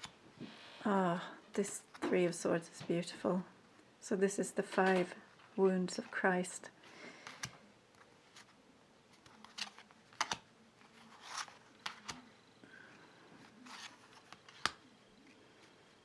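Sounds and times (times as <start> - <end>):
cards sliding: 7.2 - 12.3, 13.4 - 15.7
cards tapped down: 9.2 - 10.4.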